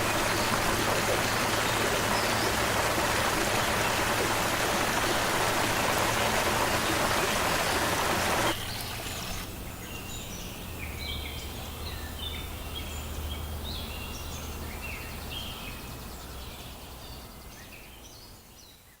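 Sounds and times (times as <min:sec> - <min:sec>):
creek water rushing: 0:00.0 - 0:09.6
songbirds chirping: 0:00.0 - 0:19.0.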